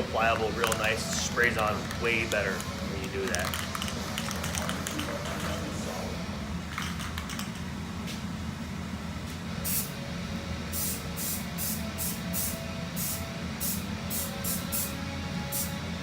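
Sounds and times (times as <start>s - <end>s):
steady low hum: 0.0s - 16.0s
aerosol spray can hissing: 9.7s - 10.0s, 10.7s - 15.8s.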